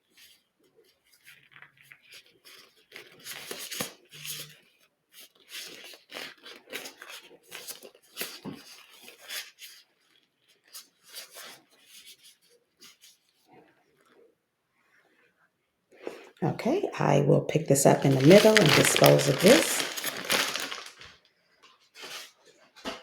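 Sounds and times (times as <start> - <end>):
gloves rubbing and rustling: 17.6 - 21.1
glove crackles and snaps: 18.0 - 21.1.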